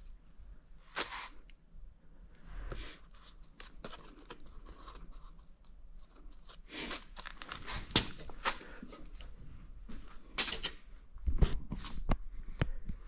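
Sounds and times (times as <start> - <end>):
scrape or rustle: 0.8 - 1.4.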